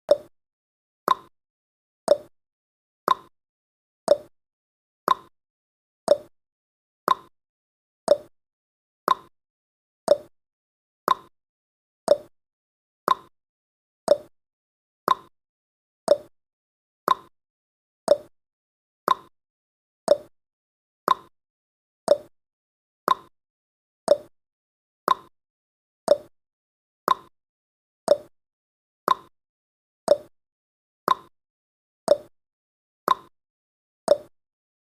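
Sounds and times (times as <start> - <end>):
timer ticking: 0.1 - 0.3, 1.1 - 1.3, 2.1 - 2.3, 3.1 - 3.3, 4.1 - 4.3, 5.1 - 5.3, 6.1 - 6.3, 7.1 - 7.3, 8.1 - 8.3, 9.1 - 9.3, 10.1 - 10.3, 11.1 - 11.3, 12.1 - 12.3, 13.1 - 13.3, 14.1 - 14.3, 15.1 - 15.3, 16.1 - 16.3, 17.1 - 17.3, 18.1 - 18.3, 19.1 - 19.3, 20.1 - 20.3, 21.1 - 21.3, 22.1 - 22.3, 23.1 - 23.3, 24.1 - 24.3, 25.1 - 25.3, 26.1 - 26.3, 27.1 - 27.3, 28.1 - 28.3, 29.1 - 29.3, 30.1 - 30.3, 31.1 - 31.3, 32.1 - 32.3, 33.1 - 33.3, 34.1 - 34.3.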